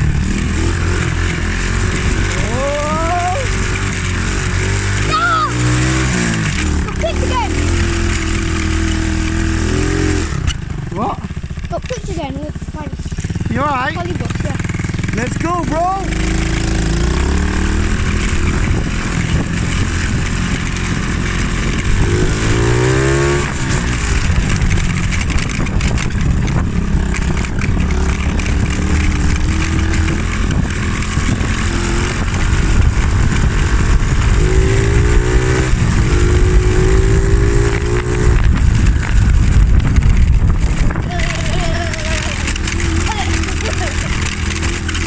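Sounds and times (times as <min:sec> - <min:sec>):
small motorbike engine revving: 0:00.0 - 0:45.0.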